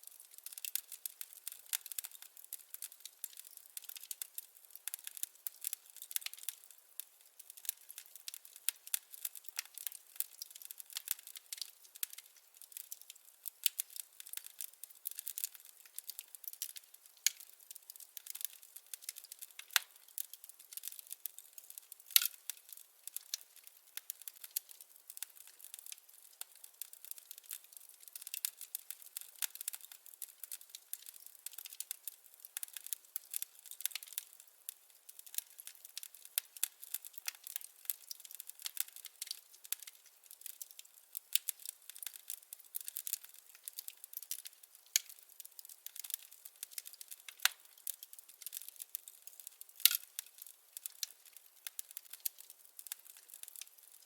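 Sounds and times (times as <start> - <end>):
firewood crackling: 0.0 - 54.0.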